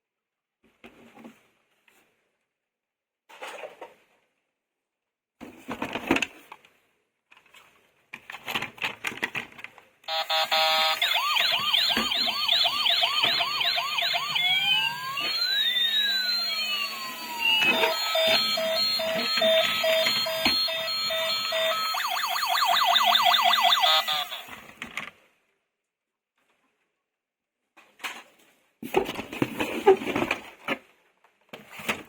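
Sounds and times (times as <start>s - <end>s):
toy electronic siren: 10.1s - 24.6s.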